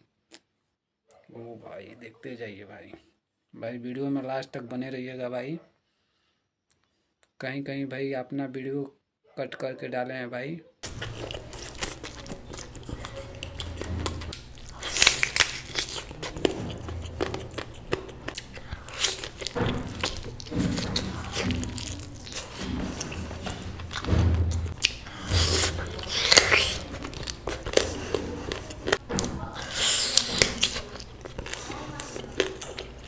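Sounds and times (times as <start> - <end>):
person biting and chewing: 10.8 - 33.0.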